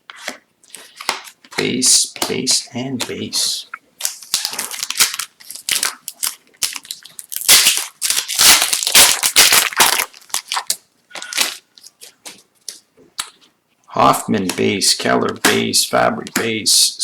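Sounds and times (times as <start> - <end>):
foil wrapper crinkling and tearing: 4.0 - 12.2.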